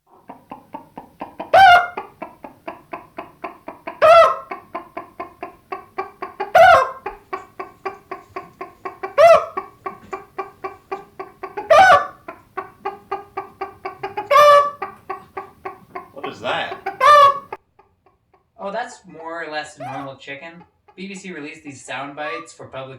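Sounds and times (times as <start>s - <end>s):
chicken clucking: 0.0s - 22.5s
chicken squawking: 0.1s - 21.4s, 22.1s - 22.5s.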